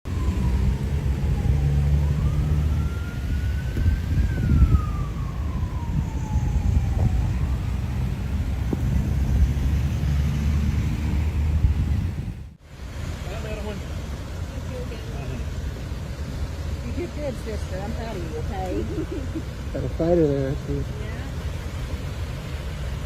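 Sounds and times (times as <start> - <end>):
siren wailing: 0.1 - 11.6
loud low rumbling: 0.1 - 12.6.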